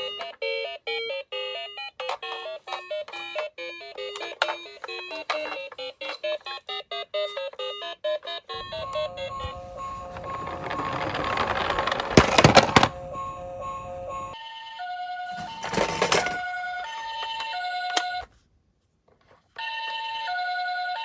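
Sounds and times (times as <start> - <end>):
toy cars clacking: 2.0 - 6.6, 8.6 - 14.4, 15.4 - 18.1
toy cars rattling down plastic slope: 8.6 - 14.4, 15.4 - 16.6.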